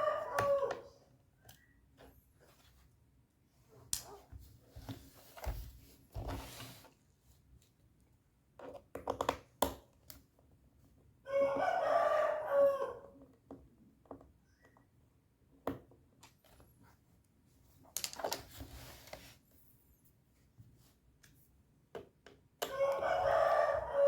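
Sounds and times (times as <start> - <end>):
rooster crowing: 0.0 - 0.9, 11.3 - 13.1, 22.7 - 24.0.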